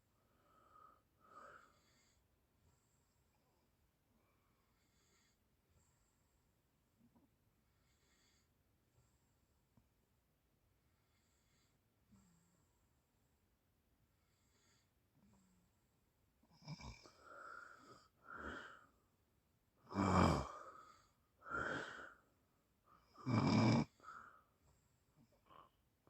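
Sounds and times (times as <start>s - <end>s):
person snoring: 16.6s - 18.8s, 19.8s - 22.2s, 23.1s - 24.3s
person breathing: 17.0s - 19.0s, 20.4s - 22.4s, 23.8s - 25.8s.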